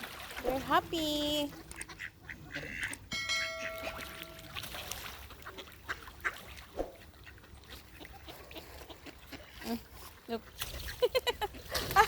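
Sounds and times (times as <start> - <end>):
duck and swan calls: 1.3 - 11.0
birds pecking: 1.3 - 11.9
held steady tone: 3.1 - 4.6.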